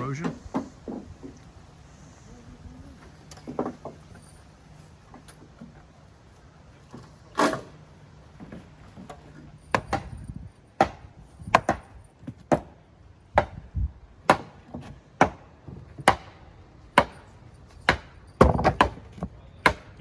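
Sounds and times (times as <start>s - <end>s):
hammer striking wood: 0.2s - 1.4s, 9.7s - 10.2s, 10.8s - 12.8s, 13.4s - 13.6s, 14.2s - 17.3s, 17.9s - 20.0s.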